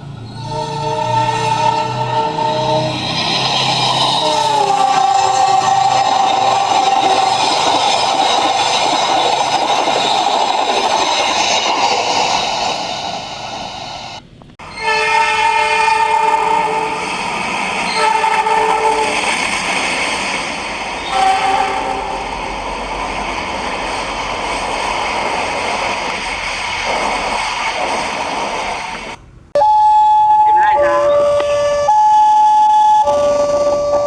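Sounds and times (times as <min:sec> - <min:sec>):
moving train rumble and clatter: 0:00.0 - 0:29.6
locomotive air horn: 0:00.4 - 0:03.1, 0:14.6 - 0:17.2, 0:17.9 - 0:19.3, 0:21.0 - 0:22.4, 0:29.6 - 0:34.0.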